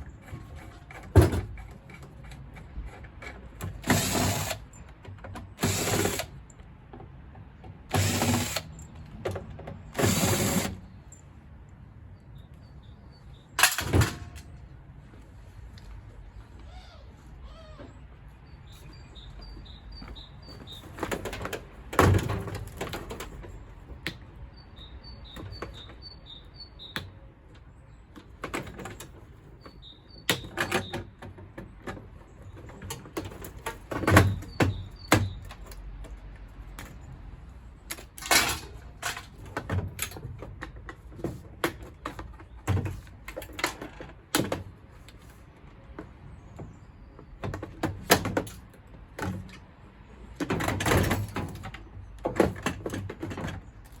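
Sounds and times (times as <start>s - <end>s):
metal parts knocking and clattering: 13.6s - 14.6s.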